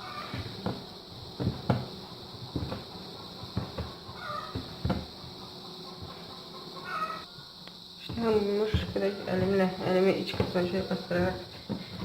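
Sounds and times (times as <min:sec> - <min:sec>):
dough thumping on tabletop: 0:00.2 - 0:05.2, 0:08.0 - 0:12.0.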